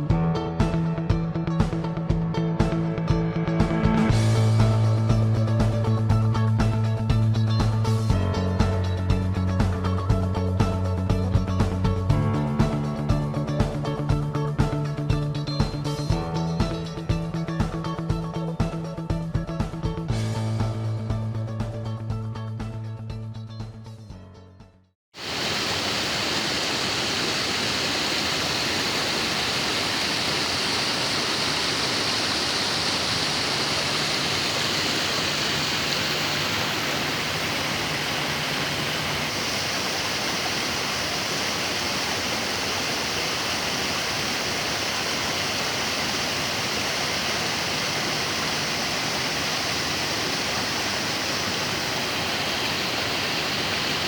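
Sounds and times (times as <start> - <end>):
waterfall rushing: 25.2 - 54.0.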